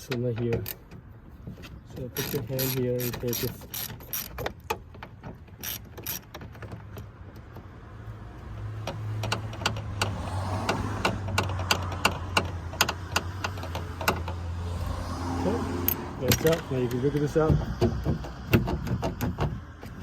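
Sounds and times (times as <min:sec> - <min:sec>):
socket ratchet clicking: 0:02.2 - 0:06.6, 0:08.8 - 0:14.4.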